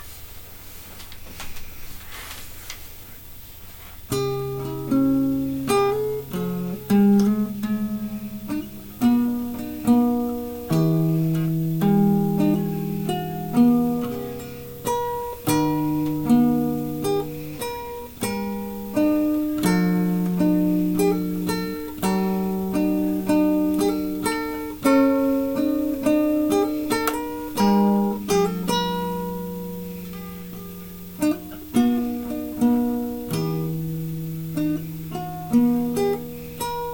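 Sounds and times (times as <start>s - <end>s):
fingerstyle acoustic guitar: 3.7s - 36.9s.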